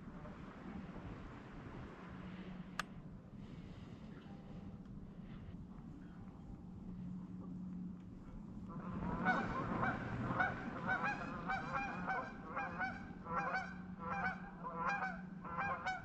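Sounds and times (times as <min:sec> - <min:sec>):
low steady hum: 0:00.0 - 0:16.0
geese honking: 0:08.7 - 0:16.0.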